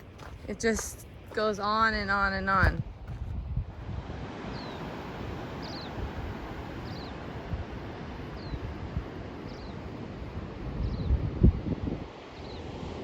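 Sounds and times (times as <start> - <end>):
wind buffeting microphone: 0.0 - 13.0
bird chirping: 5.6 - 6.0.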